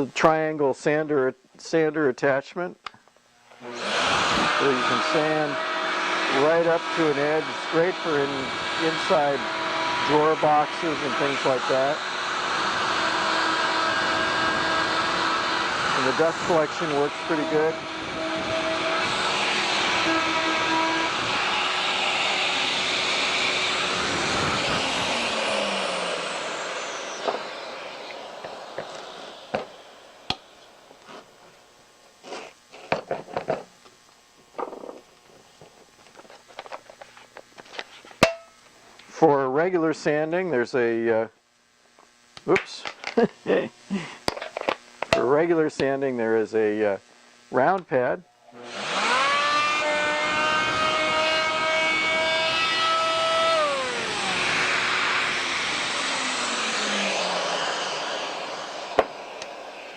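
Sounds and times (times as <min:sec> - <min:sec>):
oscillating multi-tool running: 0:03.6 - 0:30.5, 0:48.6 - 0:59.9.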